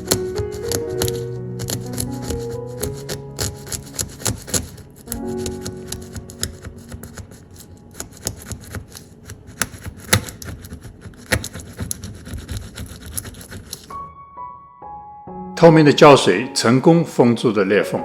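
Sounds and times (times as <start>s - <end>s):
blade clicking on stone: 0.0s - 13.9s
razor blade scraping stone: 0.0s - 13.9s.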